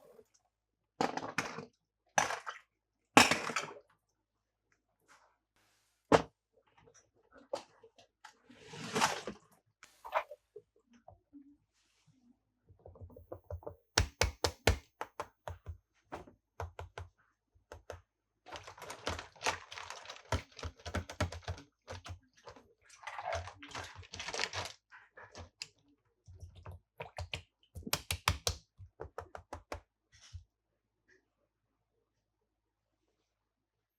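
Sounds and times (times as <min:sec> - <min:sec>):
plastic toys clicking and knocking: 0:13.4 - 0:15.8, 0:17.7 - 0:22.3, 0:26.4 - 0:29.9.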